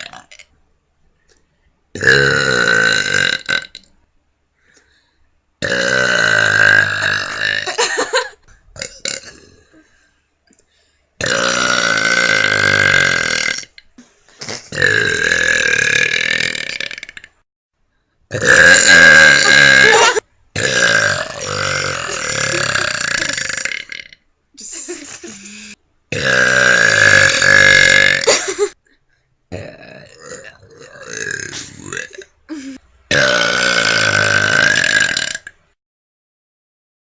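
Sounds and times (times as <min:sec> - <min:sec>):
person belching: 0:00.0 - 0:00.5, 0:02.0 - 0:03.9, 0:05.6 - 0:09.9, 0:11.2 - 0:13.8, 0:14.4 - 0:17.4, 0:18.3 - 0:24.2, 0:25.2 - 0:28.7, 0:29.5 - 0:35.6.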